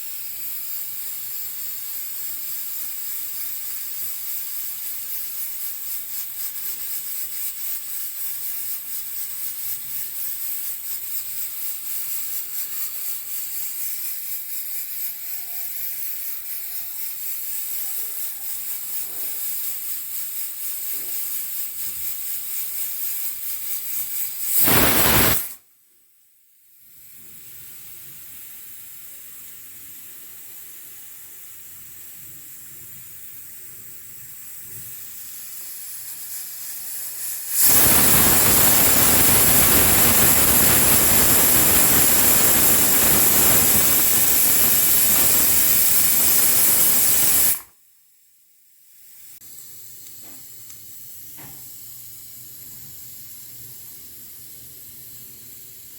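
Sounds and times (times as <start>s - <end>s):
steam hissing: 0.0s - 25.6s, 26.8s - 47.7s, 48.9s - 55.9s
pressure cooker whistle: 14.9s - 19.5s, 24.5s - 25.6s, 34.2s - 47.7s.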